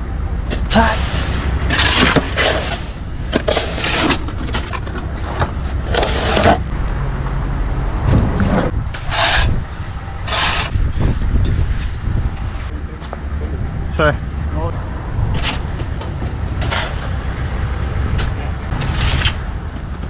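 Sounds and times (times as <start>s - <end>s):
low engine rumble: 0.0s - 20.0s
metal tools scraping asphalt: 0.5s - 6.7s, 9.0s - 10.8s, 15.4s - 19.5s.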